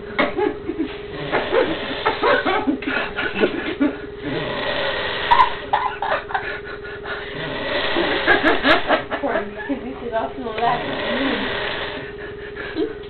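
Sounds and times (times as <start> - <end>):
man snoring: 1.1 - 2.4, 4.2 - 5.7, 7.1 - 8.7, 10.7 - 12.2.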